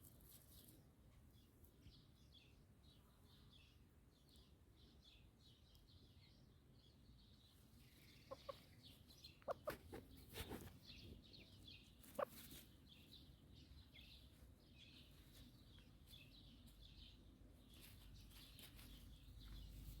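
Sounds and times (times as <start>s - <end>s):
small birds chirping faintly: 0.0s - 20.0s
chicken clucking: 8.2s - 12.6s.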